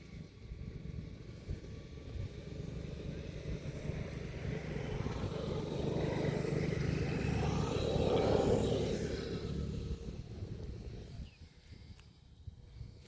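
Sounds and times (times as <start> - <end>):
motor vehicle passing: 0.0 - 11.8.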